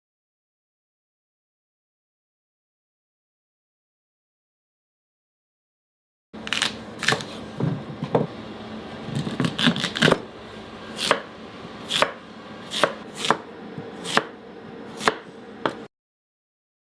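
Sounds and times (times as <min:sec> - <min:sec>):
knife chopping sweet potato: 0:09.1 - 0:10.3, 0:10.9 - 0:15.9.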